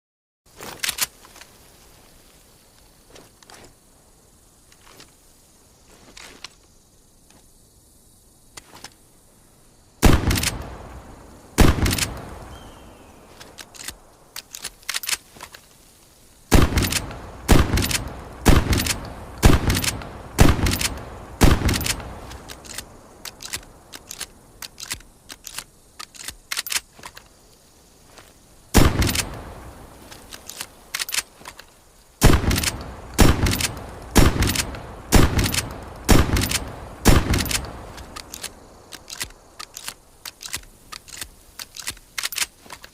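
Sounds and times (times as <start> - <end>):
mechanical clicks of gun action: 13.4 - 15.6, 16.8 - 27.3, 30.1 - 31.7, 32.4 - 42.9.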